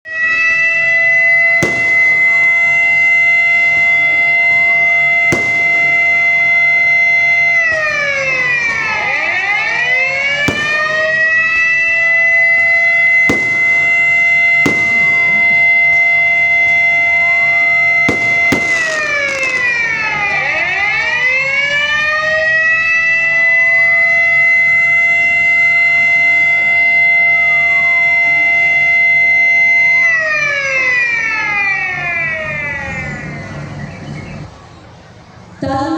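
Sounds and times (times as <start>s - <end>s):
sharp bangs: 0.1s - 21.1s, 30.5s - 35.4s
faint gliding siren tone: 0.1s - 35.9s
siren wailing: 0.1s - 35.9s.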